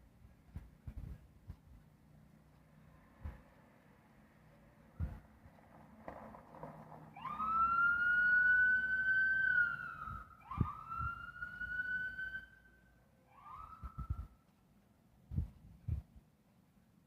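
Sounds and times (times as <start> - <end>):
police car siren: 7.2 - 14.3.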